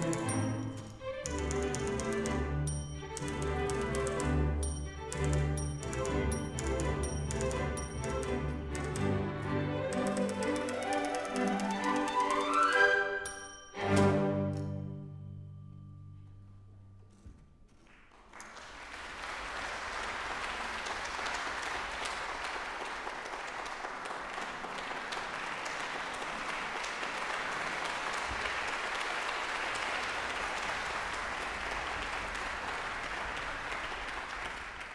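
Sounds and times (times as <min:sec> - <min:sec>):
audience applauding: 0:03.0 - 0:13.2, 0:17.8 - 0:34.9.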